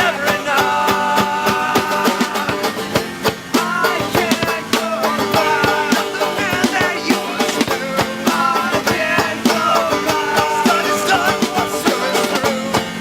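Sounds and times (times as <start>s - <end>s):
strummed strings: 0.0s - 13.0s.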